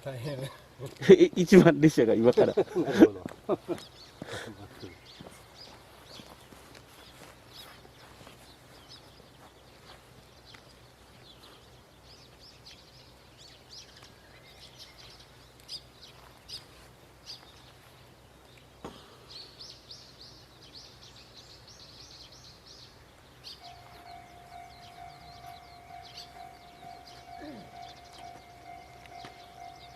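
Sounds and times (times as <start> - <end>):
small birds chirping: 0.0 - 29.9
steady low hum: 22.5 - 29.9
distant held tone: 23.6 - 29.9.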